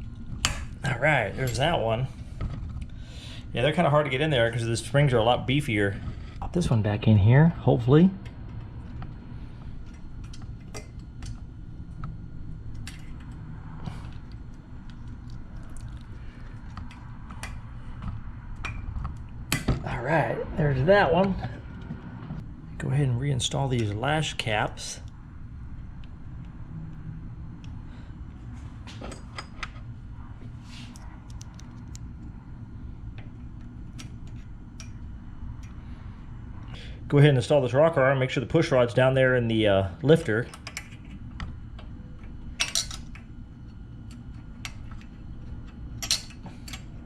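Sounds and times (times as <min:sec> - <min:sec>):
low steady hum: 0:00.0 - 0:47.0.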